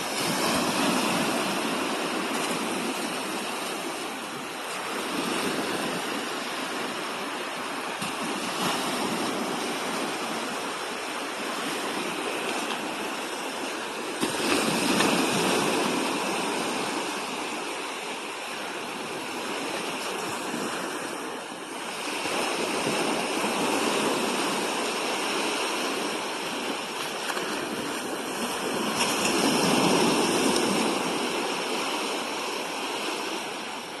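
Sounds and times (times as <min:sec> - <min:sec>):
sea waves breaking on beach: 0:00.0 - 0:34.0.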